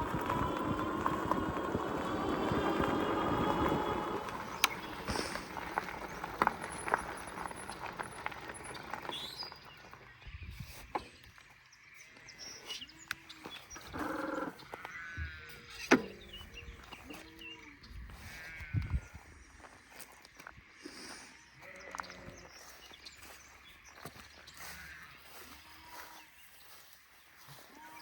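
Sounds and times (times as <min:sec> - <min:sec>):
electric bike motor whine: 0:00.0 - 0:09.6
road and wind noise: 0:00.0 - 0:11.8, 0:13.1 - 0:20.8.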